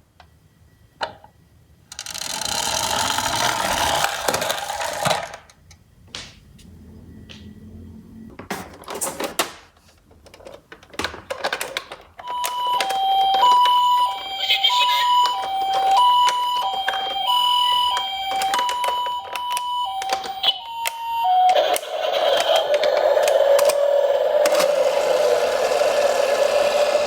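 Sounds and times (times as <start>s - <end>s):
two-tone toy siren: 12.2s - 27.0s.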